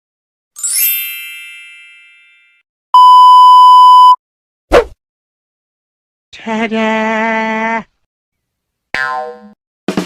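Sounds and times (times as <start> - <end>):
bright chime ringing: 0.6 - 2.6
electronic beep: 3.0 - 4.2.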